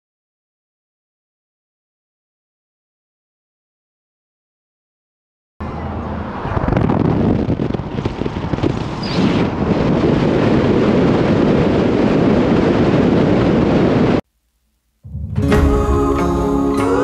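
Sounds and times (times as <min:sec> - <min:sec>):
wind buffeting the microphone: 0:05.8 - 0:14.2.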